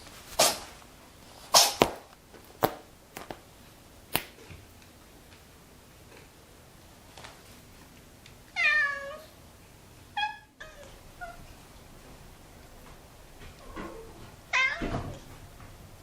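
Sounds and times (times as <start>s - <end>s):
cat meowing: 8.6s - 9.3s, 10.2s - 11.4s, 13.7s - 15.2s.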